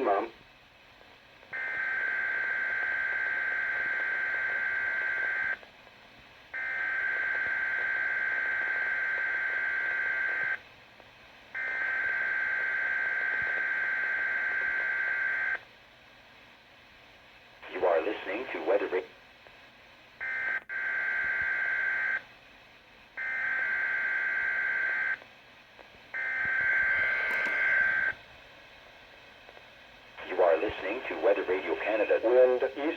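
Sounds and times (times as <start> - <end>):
buzzing data tones: 26.2 - 28.2.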